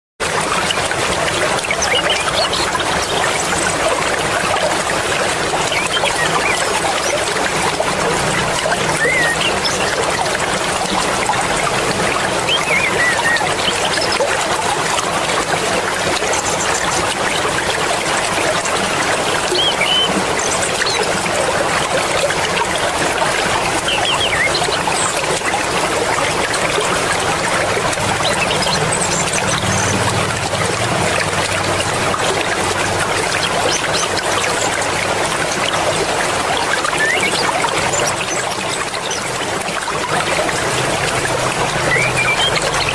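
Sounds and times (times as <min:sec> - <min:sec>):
river water rushing and splashing: 0:00.2 - 0:42.9.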